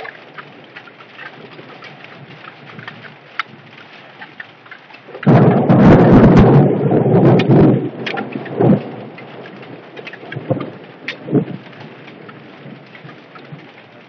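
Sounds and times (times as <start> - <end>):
hail and heavy rain: 0.0 - 14.0
thunder rumbling: 5.0 - 14.0.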